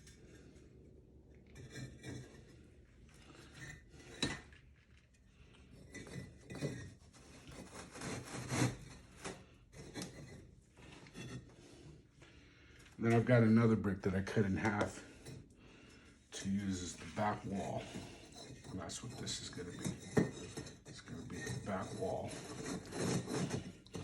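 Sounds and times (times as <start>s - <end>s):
bricks scraping and knocking: 17.0s - 24.0s.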